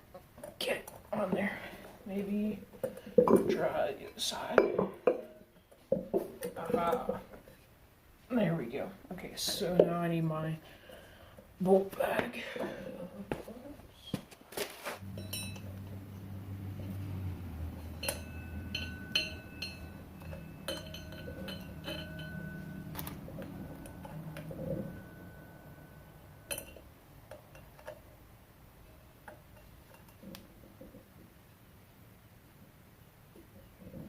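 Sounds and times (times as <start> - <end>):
low steady hum: 0.0 - 34.0
metal bolts clinking and rattling: 15.0 - 28.1.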